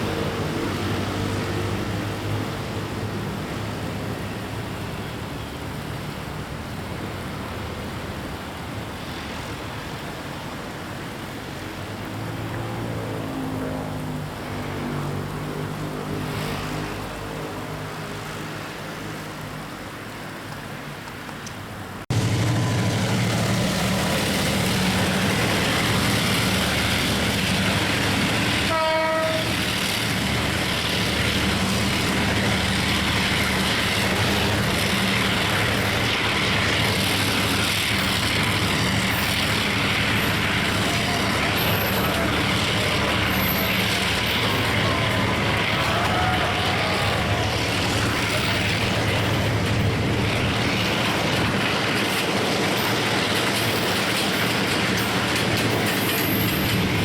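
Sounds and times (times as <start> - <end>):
passenger train rumbling by: 0.0 - 21.0, 21.6 - 57.0
engine hum rising in pitch: 22.1 - 51.3
train horn toot: 27.8 - 30.2.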